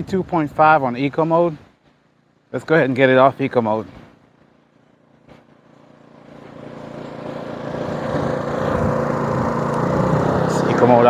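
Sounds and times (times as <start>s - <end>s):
generator engine speeding up: 5.0s - 11.0s.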